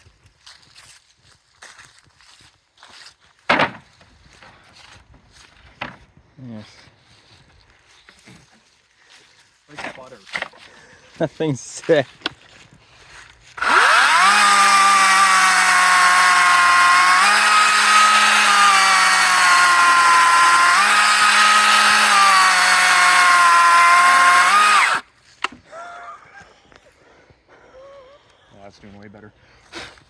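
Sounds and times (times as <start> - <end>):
electric chainsaw cutting wood: 13.5 - 25.1.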